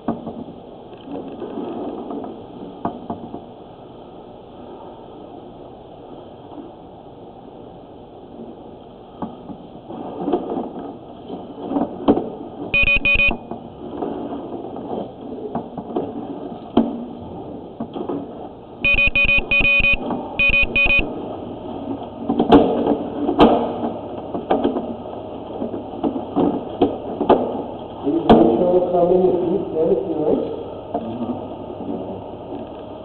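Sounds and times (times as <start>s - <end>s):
high-pitched electronic beeping: 12.8s - 13.4s, 18.8s - 21.1s.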